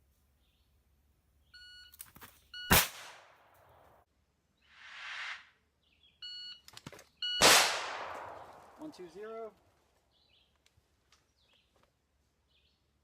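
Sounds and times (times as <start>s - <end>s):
electronic timer beep: 1.6s - 2.0s, 6.2s - 6.6s, 7.2s - 7.4s
gunshot with echo: 2.7s - 3.3s, 7.4s - 8.9s
soft whoosh: 4.8s - 5.5s.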